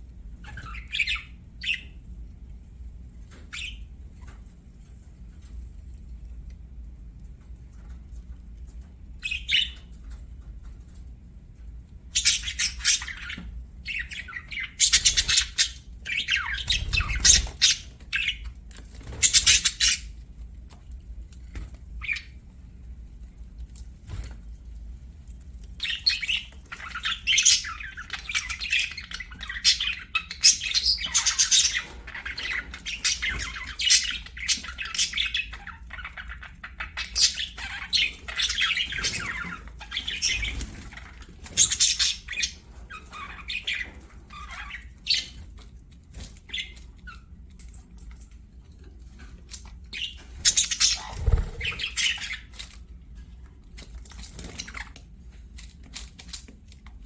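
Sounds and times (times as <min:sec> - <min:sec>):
budgerigars chattering and chirping: 0:00.4 - 0:02.0, 0:12.1 - 0:20.2, 0:25.8 - 0:45.4, 0:49.9 - 0:52.6.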